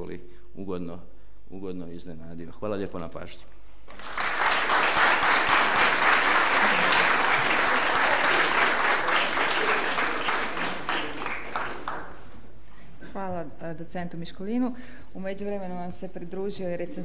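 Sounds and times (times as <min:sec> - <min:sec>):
audience applauding: 0:03.9 - 0:12.4.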